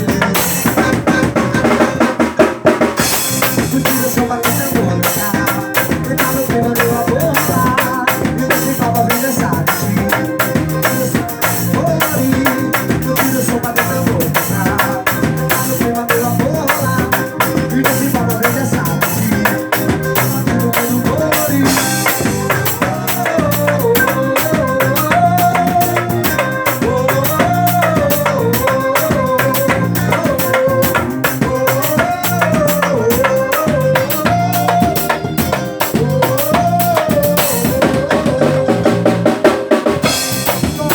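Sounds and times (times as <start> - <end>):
drums and rattles beat: 0.0 - 40.9
wavering melody line: 6.6 - 39.0.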